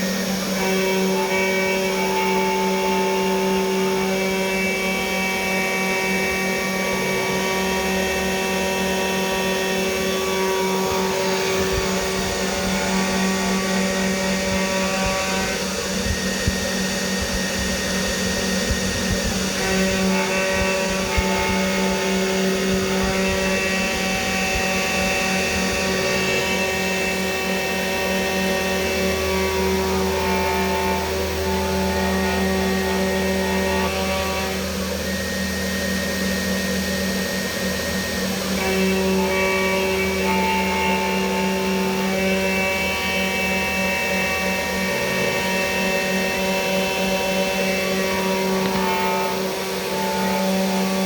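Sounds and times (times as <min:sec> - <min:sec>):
spindle motor hum: 0:00.0 - 0:51.0
low hum: 0:10.2 - 0:26.8.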